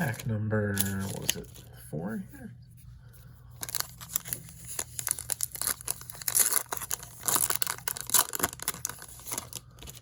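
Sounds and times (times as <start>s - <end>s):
wrapper tearing and crinkling: 3.6s - 10.0s.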